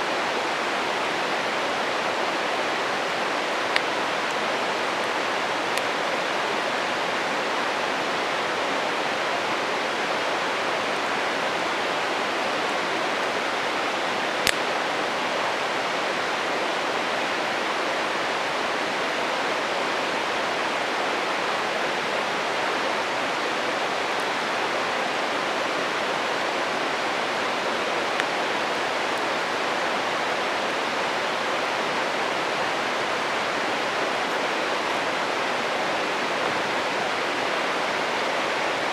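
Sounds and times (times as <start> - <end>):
stream rushing: 0.0 - 38.9
wood fire popping: 3.6 - 4.4, 14.4 - 14.9.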